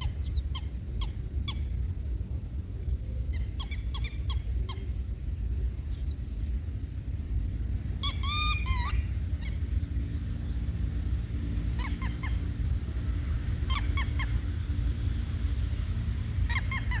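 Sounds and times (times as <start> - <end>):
low rumble: 0.0 - 17.0
lapwing calling sharp notes: 8.0 - 9.6, 16.4 - 17.0.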